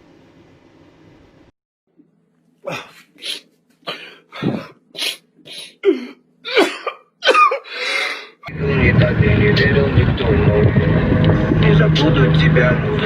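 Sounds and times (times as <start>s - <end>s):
short sharp vocal bursts: 2.7s - 5.8s.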